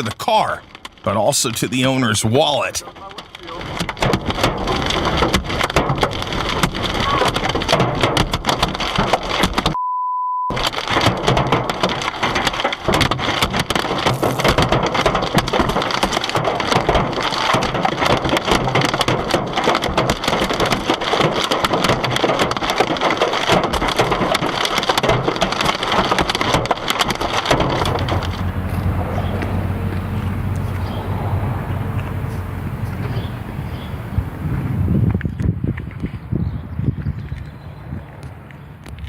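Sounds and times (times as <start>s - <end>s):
hail pelting a car: 0.0s - 9.8s, 10.5s - 35.1s
censor bleep: 9.8s - 10.5s
low steady hum: 27.6s - 35.0s.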